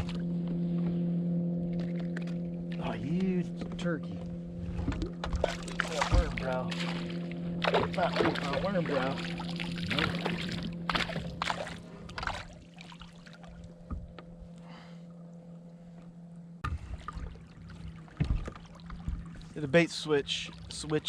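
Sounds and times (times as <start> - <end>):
steady low hum: 0.0 - 21.0
water sloshing against hull: 0.0 - 21.0.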